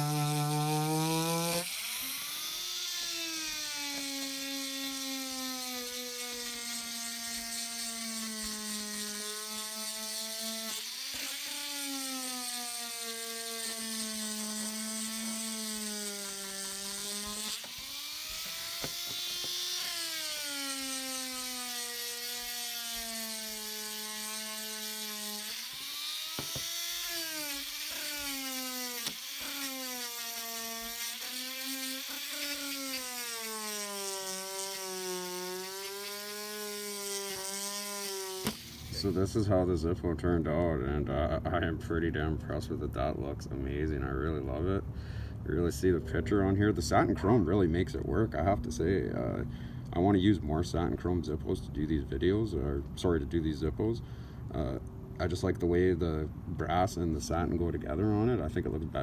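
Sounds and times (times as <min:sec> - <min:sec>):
polishing motor whine: 0:00.0 - 0:39.5.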